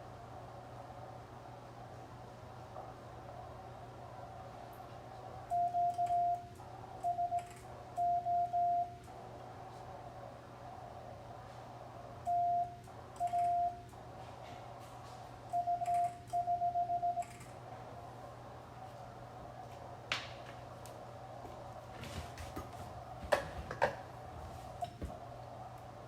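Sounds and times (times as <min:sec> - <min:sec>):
faint background tone: 0:00.0 - 0:26.0
morse code tone: 0:05.5 - 0:09.0, 0:12.3 - 0:13.8, 0:15.5 - 0:17.3.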